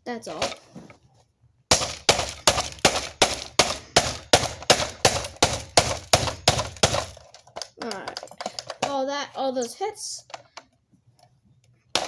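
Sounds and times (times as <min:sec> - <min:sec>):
hammer striking plastic panel: 0:01.7 - 0:07.2.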